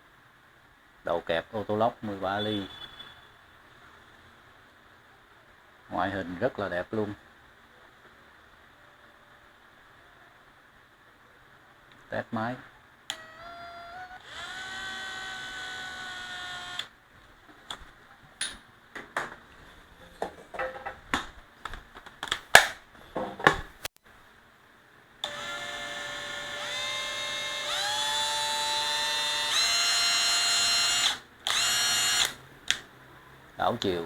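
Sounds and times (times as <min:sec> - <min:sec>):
cordless drill motor whine: 0:13.1 - 0:16.9, 0:25.2 - 0:32.4.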